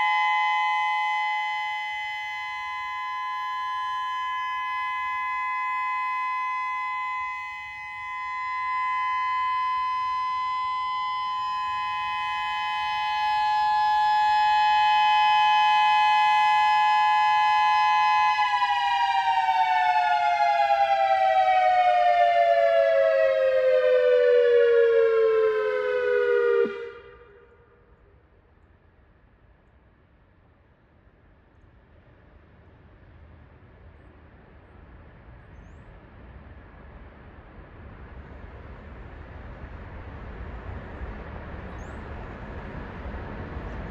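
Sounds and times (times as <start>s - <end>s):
electronic siren two-note tone: 0.0s - 27.4s.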